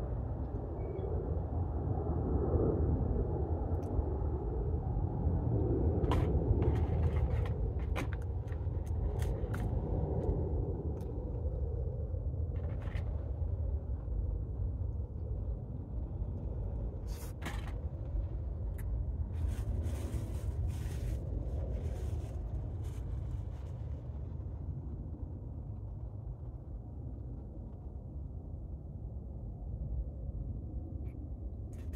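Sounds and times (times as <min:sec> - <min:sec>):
low rumble: 0:00.0 - 0:31.9.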